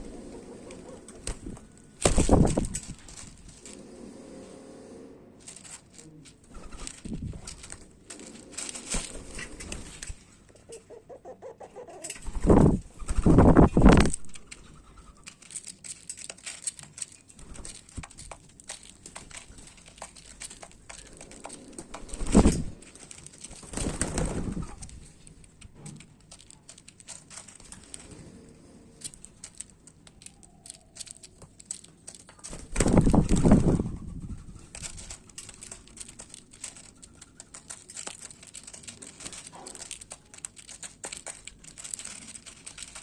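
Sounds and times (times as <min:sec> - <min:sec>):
beaks pecking seed: 0:05.5 - 0:43.0.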